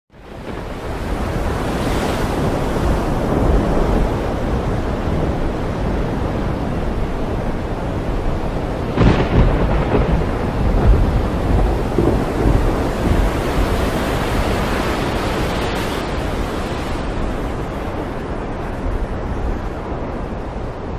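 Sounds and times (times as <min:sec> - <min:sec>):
rain and sea wash: 0:00.1 - 0:20.9
low rumble of thunder: 0:02.4 - 0:17.6
sharp thunderclap: 0:08.9 - 0:17.0.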